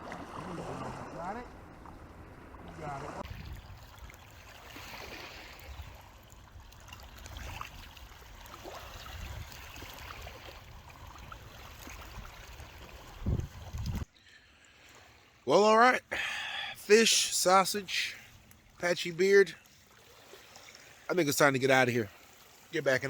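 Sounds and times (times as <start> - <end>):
water lapping at shore: 0.0 - 23.0
wind on microphone: 3.2 - 3.9, 9.0 - 14.1.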